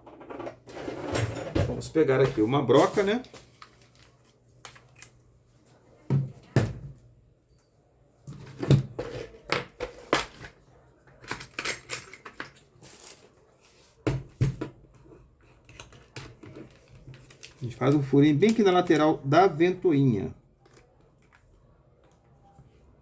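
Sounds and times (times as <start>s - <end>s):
metal tools clinking on workbench: 11.2s - 13.1s.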